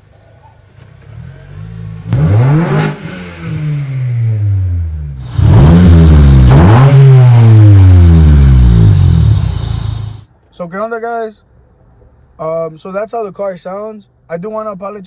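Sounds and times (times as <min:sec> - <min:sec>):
car engine revving: 0:01.0 - 0:10.2.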